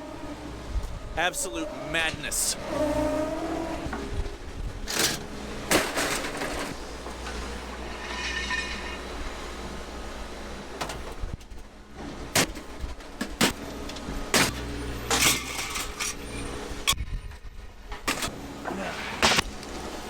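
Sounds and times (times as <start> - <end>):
faint high ringing tone: 7.7 - 9.8.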